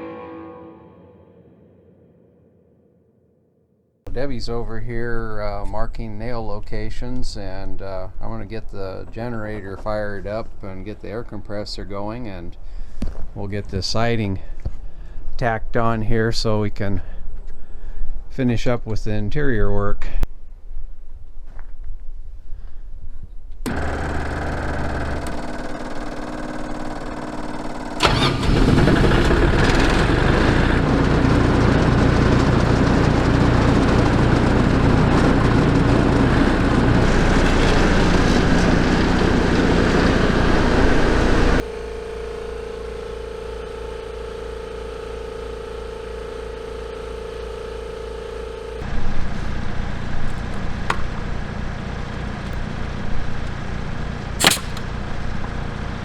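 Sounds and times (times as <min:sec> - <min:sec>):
diesel generator running: 0:23.6 - 0:56.0
air compressor running: 0:23.7 - 0:56.0.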